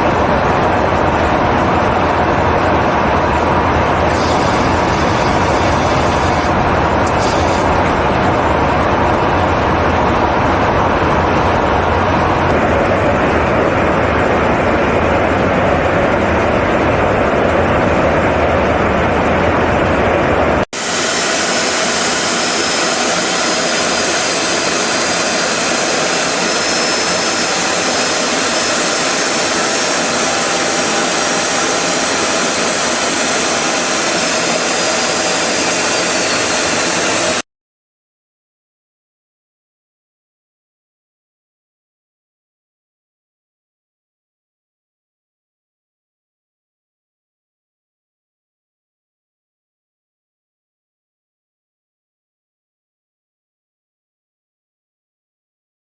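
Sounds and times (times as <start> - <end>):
jet engine rumble: 0.0 - 37.4
faint high whine: 2.9 - 10.4, 20.8 - 37.4
hissy jet noise: 4.0 - 8.5, 20.8 - 37.4.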